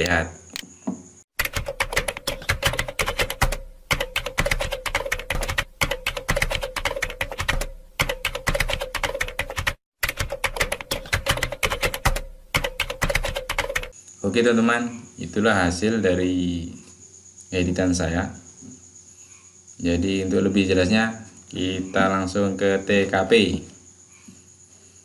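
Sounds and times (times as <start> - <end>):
typewriter keys clattering: 1.4 - 13.9.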